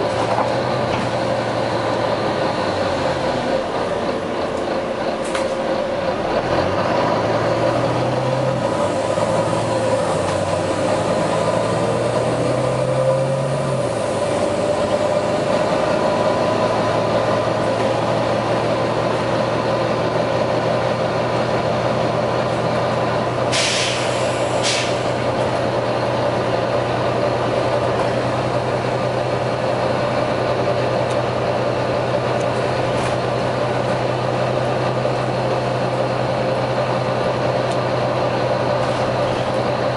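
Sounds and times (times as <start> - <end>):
diesel bus engine running: 0.0 - 39.9
engine whine: 0.0 - 39.9
short sharp hisses: 23.5 - 25.1.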